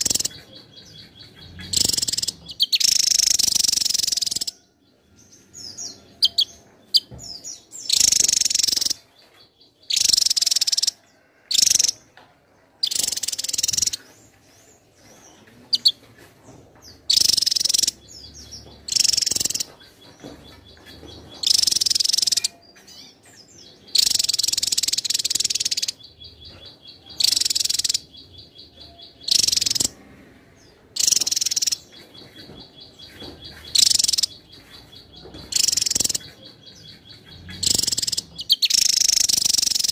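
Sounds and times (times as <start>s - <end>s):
fast bird trill: 0.0s - 4.6s, 5.8s - 7.1s, 7.8s - 9.0s, 9.9s - 12.0s, 12.8s - 14.0s, 17.1s - 18.1s, 18.9s - 19.7s, 21.4s - 22.6s, 23.9s - 26.0s, 27.0s - 28.2s, 28.8s - 30.0s, 31.0s - 32.4s, 33.5s - 34.7s, 35.4s - 39.9s.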